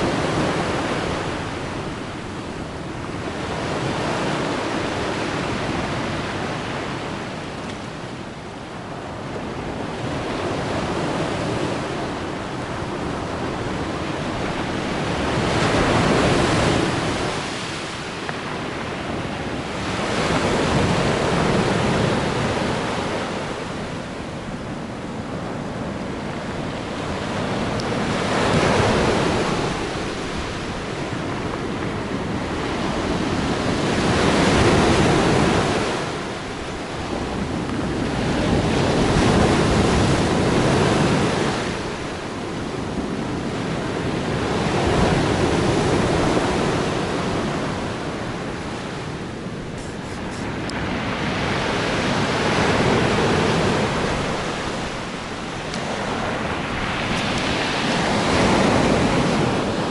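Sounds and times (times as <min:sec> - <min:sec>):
waves breaking on shore: 0:00.0 - 0:59.9.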